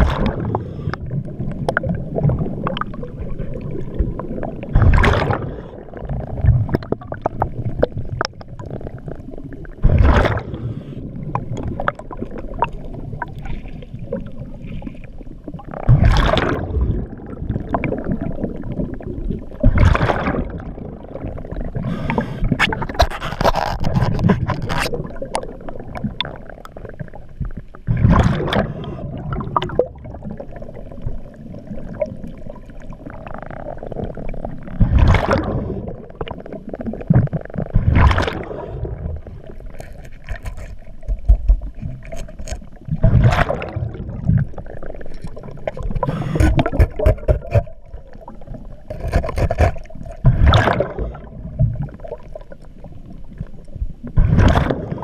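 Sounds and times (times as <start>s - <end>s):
exhaled bubbles bursting: 0.0s - 55.0s
diver breathing through regulator: 21.8s - 22.7s, 46.0s - 47.0s.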